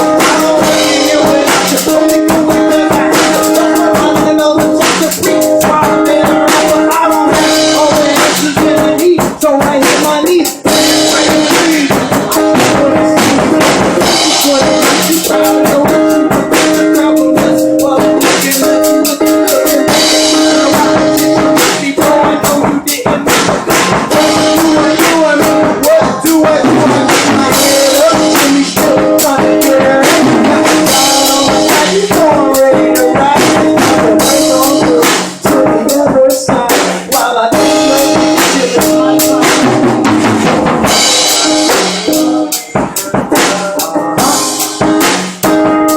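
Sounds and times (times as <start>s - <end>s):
sustained melodic backing: 0.0s - 8.9s, 10.6s - 22.3s, 37.2s - 45.9s
hip-hop drum beat: 0.0s - 45.9s.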